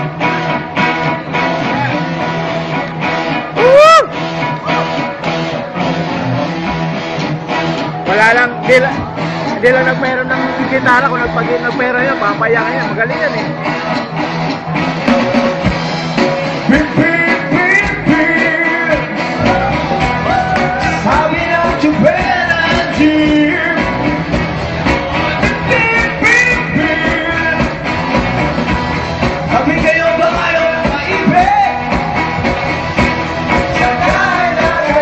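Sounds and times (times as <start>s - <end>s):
rock band playing: 0.0s - 35.0s
person singing: 16.6s - 24.3s, 24.9s - 28.2s, 33.5s - 35.0s.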